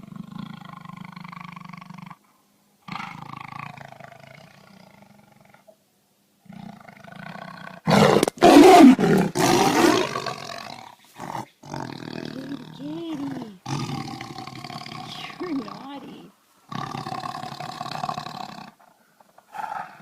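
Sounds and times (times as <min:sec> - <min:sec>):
tiger growling and snarling: 0:00.0 - 0:02.2, 0:02.8 - 0:05.8, 0:06.4 - 0:16.1, 0:16.7 - 0:20.0
tiger roaring: 0:06.4 - 0:16.0, 0:16.7 - 0:20.0.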